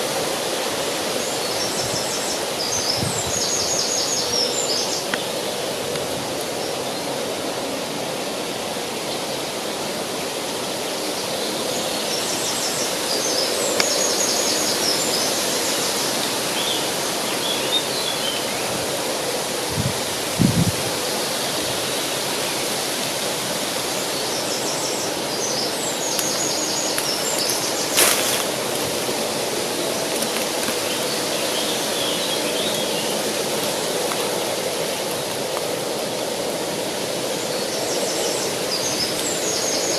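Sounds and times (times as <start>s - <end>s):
river flowing: 0.0s - 39.9s
small birds chirping: 24.0s - 35.3s.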